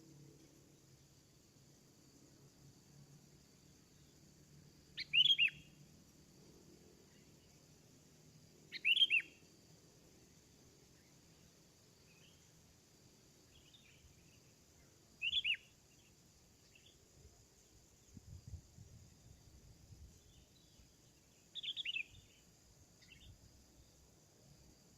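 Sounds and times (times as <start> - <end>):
faint bird chirps: 4.9 - 5.9, 7.0 - 7.8, 8.6 - 9.6, 10.8 - 12.6, 13.3 - 24.0
bulbul calling: 5.0 - 5.6, 8.7 - 9.4, 15.2 - 15.7, 21.6 - 22.3.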